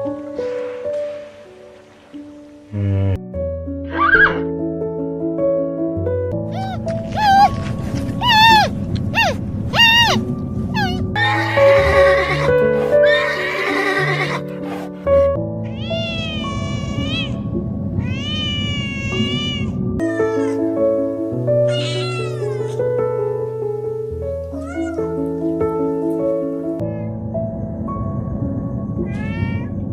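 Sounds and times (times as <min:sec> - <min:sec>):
background music: 0:00.0 - 0:29.9
cat meowing: 0:08.2 - 0:10.2, 0:15.6 - 0:17.4, 0:18.0 - 0:20.6, 0:21.7 - 0:22.8, 0:24.6 - 0:25.2, 0:29.0 - 0:29.8
noisy animal call: 0:10.8 - 0:15.2.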